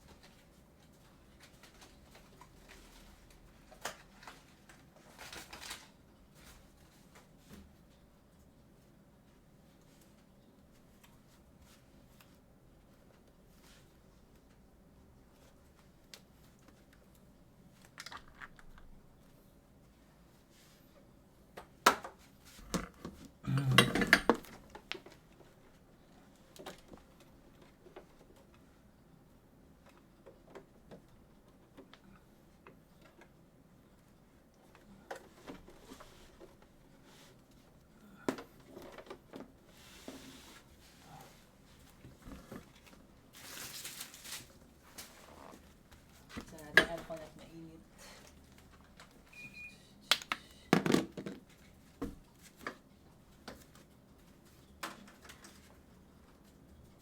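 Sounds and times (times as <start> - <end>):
knocks and clatter of objects: 22.0 - 25.0, 50.8 - 52.2
short high beep: 49.4 - 49.9.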